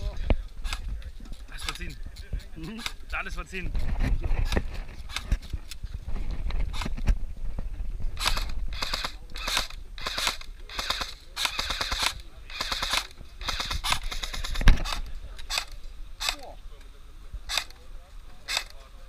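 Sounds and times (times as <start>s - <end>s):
airsoft guns firing: 8.2s - 16.5s.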